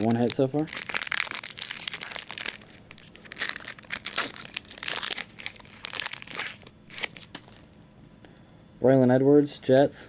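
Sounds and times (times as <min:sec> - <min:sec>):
wrapper crinkling and tearing: 0:00.0 - 0:07.8.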